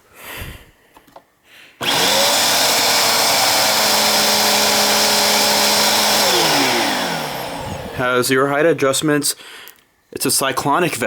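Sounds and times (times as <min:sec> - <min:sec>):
vacuum cleaner motor running: 0:01.8 - 0:08.1.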